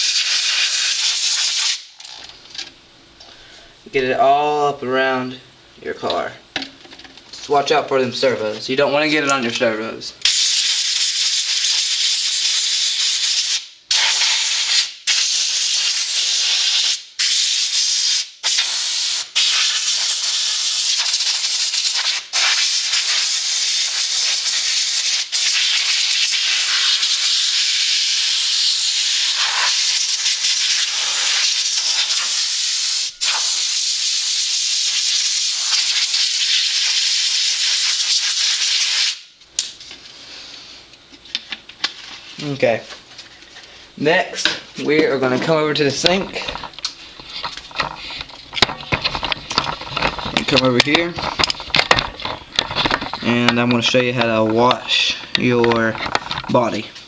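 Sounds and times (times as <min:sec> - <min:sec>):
compressed air blow gun hissing: 0:10.2 - 0:39.2.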